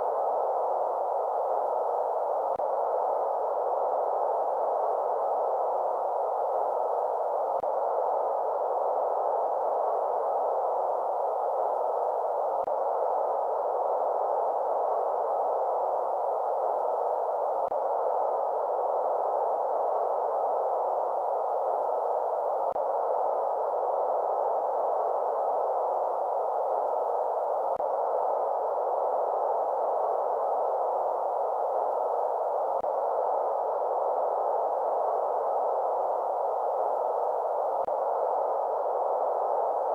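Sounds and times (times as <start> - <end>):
steady white noise hiss: 0.0 - 39.9.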